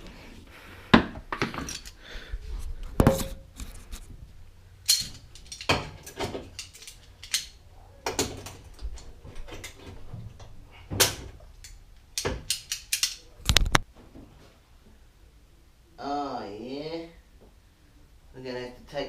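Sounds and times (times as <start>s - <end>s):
hand tools clanking on metal: 4.9s - 7.5s.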